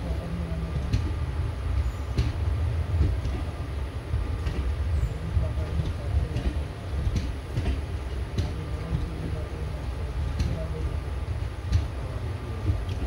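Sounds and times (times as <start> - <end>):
passenger train rumbling: 0.0 - 13.0
metallic clanks from train wheels: 1.8 - 3.5, 4.4 - 9.4.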